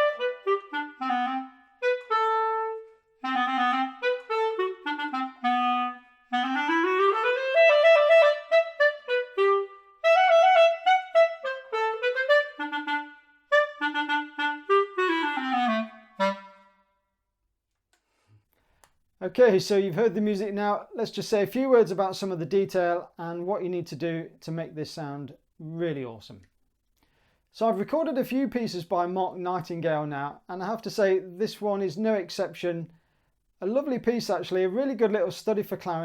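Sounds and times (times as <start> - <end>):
solo clarinet playing: 0.0 - 17.1.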